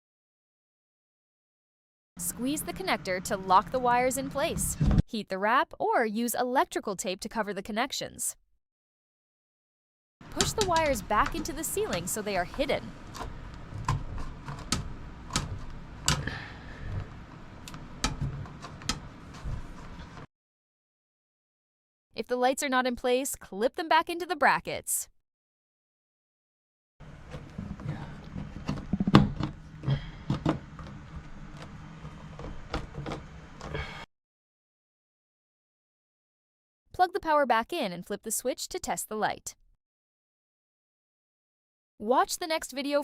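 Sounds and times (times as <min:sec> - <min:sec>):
low steady hum: 0:02.2 - 0:05.0, 0:10.3 - 0:20.3, 0:27.0 - 0:34.0
plastic clicks and knocks: 0:27.3 - 0:29.6.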